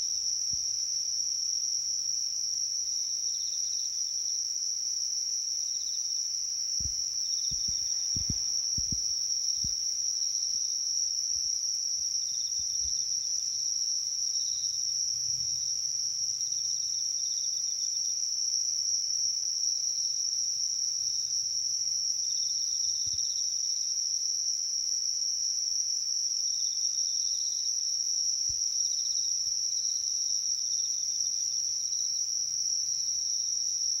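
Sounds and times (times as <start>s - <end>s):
high-pitched insect trill: 0.0s - 34.0s
pulsing insect chirps: 5.6s - 18.1s
low thumps: 6.8s - 9.8s.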